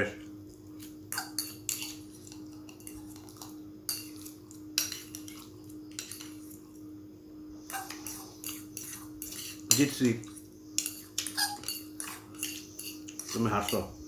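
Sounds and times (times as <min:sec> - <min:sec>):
steady low hum: 0:00.0 - 0:14.0
cutlery clinking on dishes: 0:07.7 - 0:13.9.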